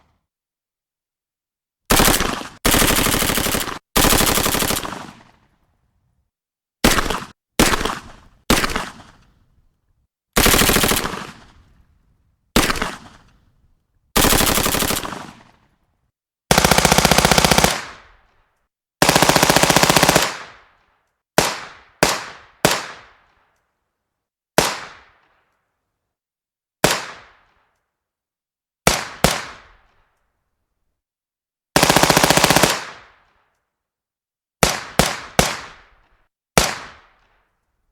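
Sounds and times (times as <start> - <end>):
submachine gun firing bursts: 1.9 - 5.4, 6.8 - 9.2, 10.4 - 11.6, 12.6 - 13.3, 14.2 - 15.6, 16.5 - 18.1, 19.0 - 20.7, 31.8 - 33.2, 34.6 - 35.8.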